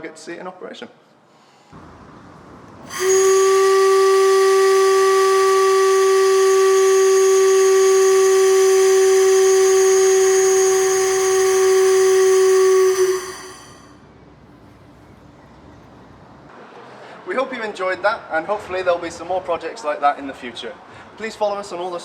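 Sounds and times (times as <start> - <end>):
air whistle blast with hiss: 2.8 - 14.0.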